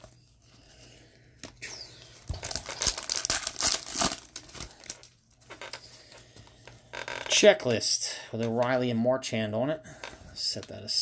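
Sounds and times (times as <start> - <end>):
foil wrapper tearing and crinkling: 2.3 - 5.2.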